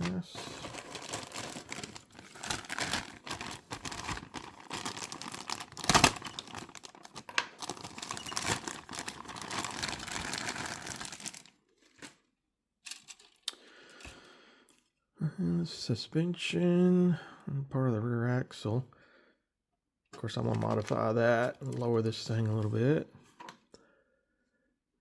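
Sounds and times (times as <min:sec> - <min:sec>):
plastic bags crinkling: 0:00.0 - 0:12.2, 0:20.4 - 0:22.8.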